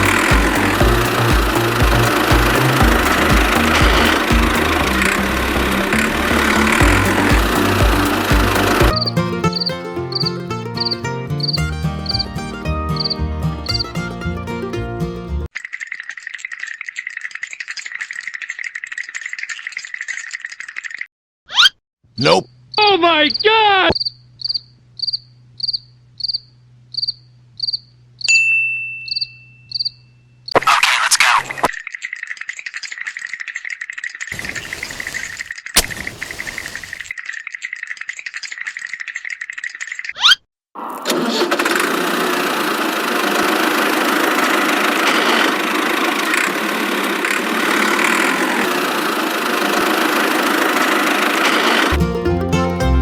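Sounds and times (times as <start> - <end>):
motor running: 0.0 - 9.0, 41.5 - 52.0
cricket chirping: 24.0 - 28.4, 29.1 - 30.6
bright ringing ding: 28.3 - 30.2.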